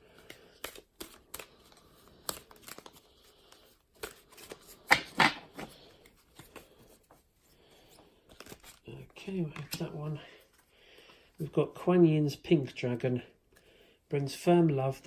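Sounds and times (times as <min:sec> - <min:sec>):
cards being shuffled: 0:00.0 - 0:10.6.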